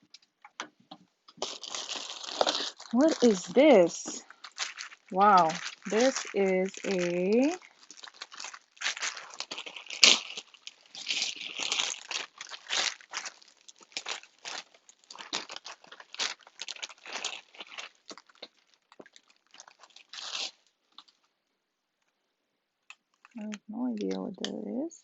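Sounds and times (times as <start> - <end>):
packaging crinkling: 1.3 - 21.3, 22.8 - 24.2.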